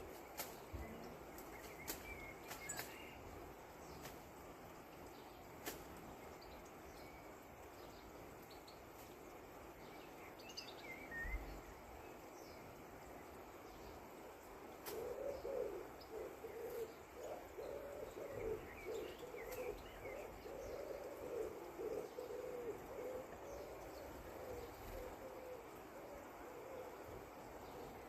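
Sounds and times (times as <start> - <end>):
faint higher bird chirps: 10.0 - 11.6
bird low hooting calls: 14.3 - 28.0.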